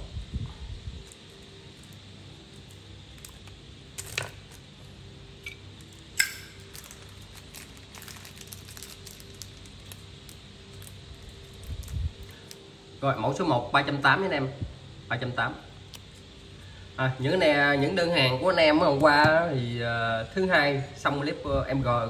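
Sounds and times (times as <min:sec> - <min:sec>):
low steady hum: 0:00.0 - 0:22.0
lighter metallic clicks: 0:06.2 - 0:06.6.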